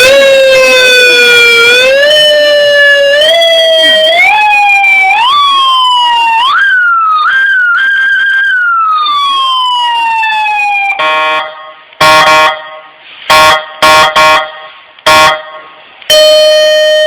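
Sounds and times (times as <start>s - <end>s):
electronic warning siren: 0.0s - 12.7s, 16.1s - 17.0s.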